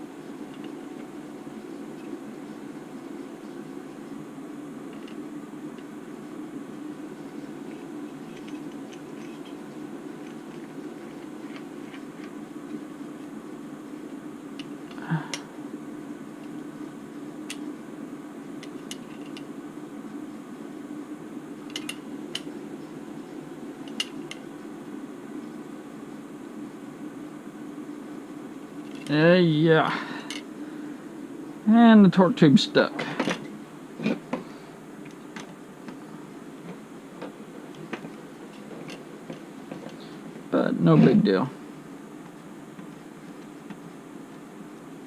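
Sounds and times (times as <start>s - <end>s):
steady low hum: 0.0s - 45.0s
small parts clicking and tapping: 21.7s - 22.5s, 23.8s - 24.4s.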